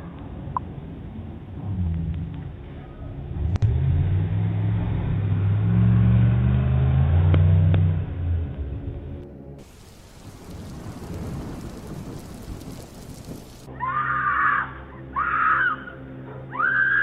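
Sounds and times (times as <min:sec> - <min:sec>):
hissing rumbling noise: 0:09.6 - 0:13.7
woman screaming: 0:13.7 - 0:17.0.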